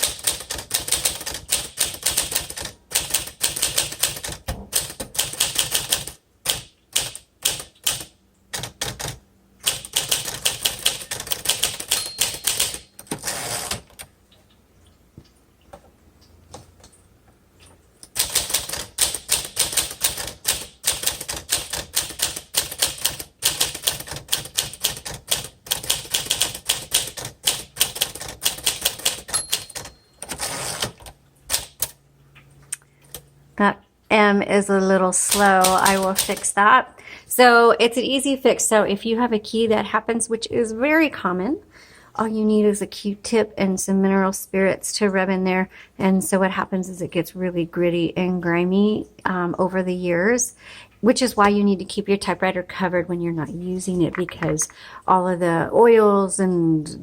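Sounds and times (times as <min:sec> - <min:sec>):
manual typewriter keystrokes: 0:00.0 - 0:14.1, 0:18.0 - 0:32.0, 0:35.3 - 0:36.5.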